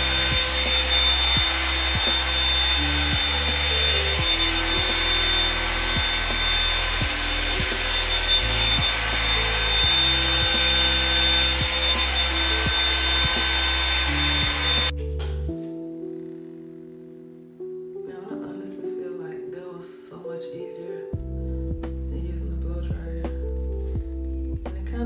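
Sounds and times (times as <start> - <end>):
blow dryer brush running: 0.0 - 14.9
background music with low bass: 0.0 - 18.0, 21.1 - 25.0.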